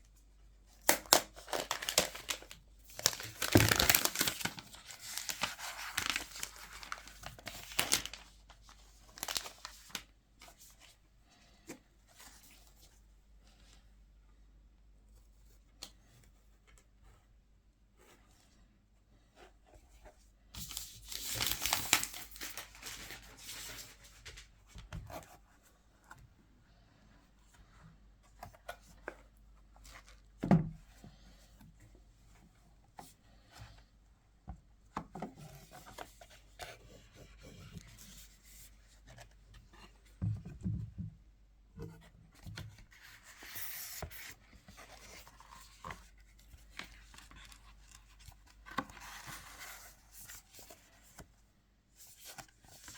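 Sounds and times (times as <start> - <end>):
cardboard packaging tearing: 0.9 - 8.2, 21.1 - 23.2
paper rustling: 0.9 - 10.1, 20.6 - 25.2.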